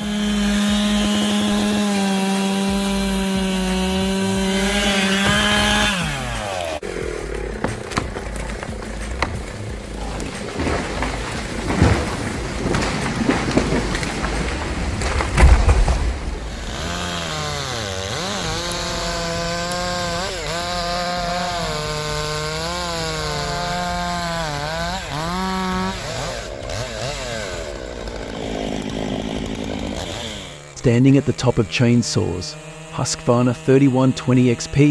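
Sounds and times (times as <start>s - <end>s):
chainsaw cutting wood: 0.0s - 34.9s
heavy thuds: 2.6s - 30.4s.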